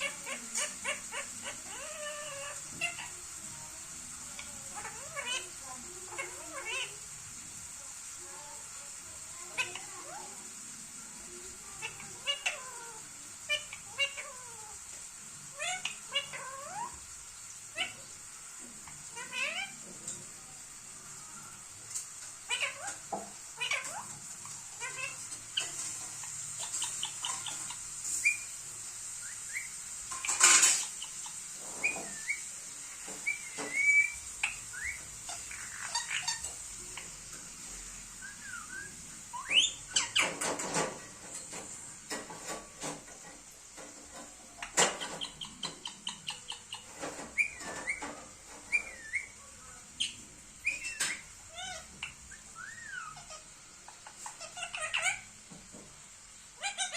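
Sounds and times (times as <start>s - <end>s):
parrot whistling and chirping: 0.0s - 3.2s, 18.8s - 19.8s, 22.4s - 37.2s, 37.9s - 40.6s, 44.6s - 55.4s, 56.6s - 56.9s
parrot screeching: 0.0s - 3.4s, 4.4s - 7.1s, 9.4s - 10.4s, 11.7s - 17.0s, 17.6s - 18.2s, 18.8s - 19.9s, 22.4s - 37.1s, 38.2s - 40.9s, 44.6s - 49.4s, 50.0s - 55.4s, 56.6s - 56.9s.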